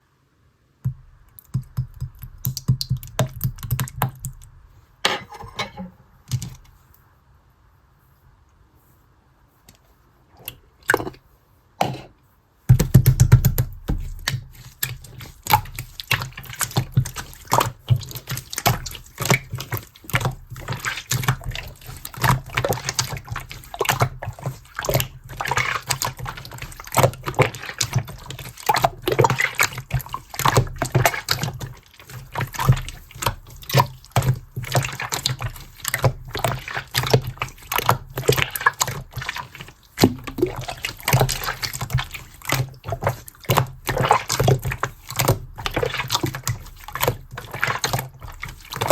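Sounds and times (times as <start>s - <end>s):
slime squelching by hand: 10.3s - 11.2s, 12.7s - 48.9s.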